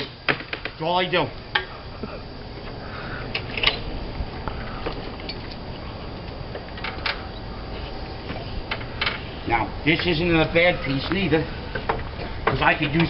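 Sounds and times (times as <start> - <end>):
steady low rumble: 0.2 - 13.0.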